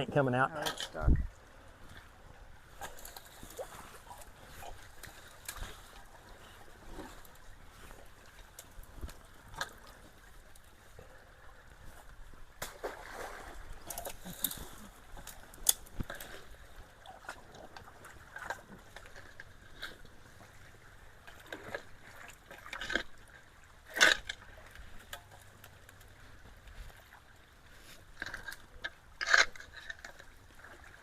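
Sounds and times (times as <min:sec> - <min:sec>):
water trickling and sloshing: 0:00.0 - 0:31.0
splashes and knocks of debris: 0:02.7 - 0:10.6, 0:11.8 - 0:27.2.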